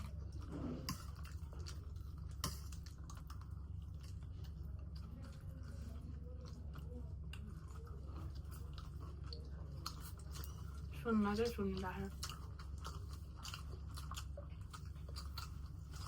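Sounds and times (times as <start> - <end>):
chewing food: 0.0 - 16.0
low steady hum: 0.0 - 16.0.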